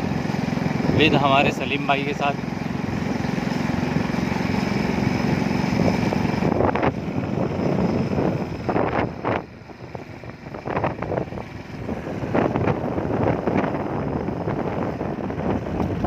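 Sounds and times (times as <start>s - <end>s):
vehicle engine running: 0.0s - 16.0s
wind buffeting microphone: 0.0s - 16.0s.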